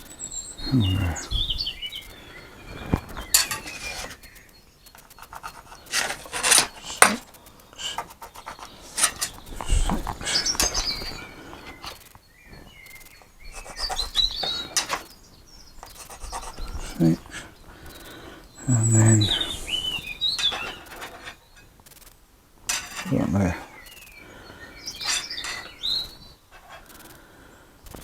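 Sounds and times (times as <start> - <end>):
bird chirps: 0.0 - 21.8, 22.7 - 27.2
tools and boards clattering: 2.7 - 4.3, 4.9 - 12.1, 13.2 - 15.2, 15.8 - 18.2, 18.8 - 21.8, 22.6 - 23.8, 24.8 - 27.1.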